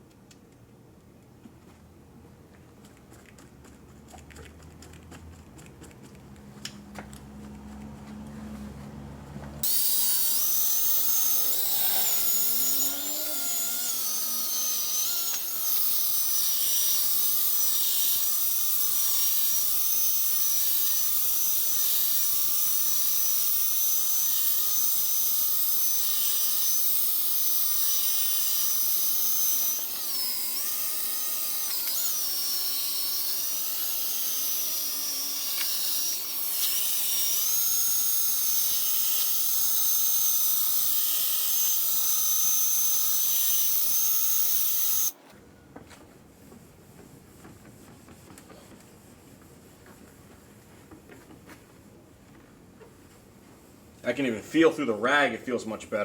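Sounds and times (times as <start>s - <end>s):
power drill motor whine: 9.6s - 18.1s, 27.9s - 45.2s.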